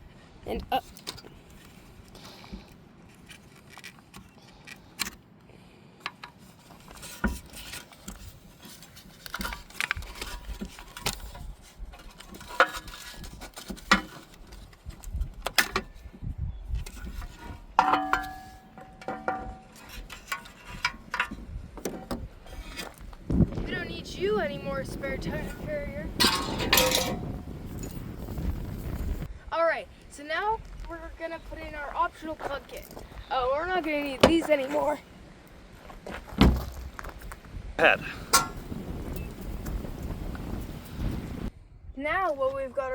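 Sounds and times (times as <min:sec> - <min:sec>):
wind rumble on microphone: 0:07.2 - 0:18.6, 0:19.2 - 0:35.1, 0:35.7 - 0:42.9.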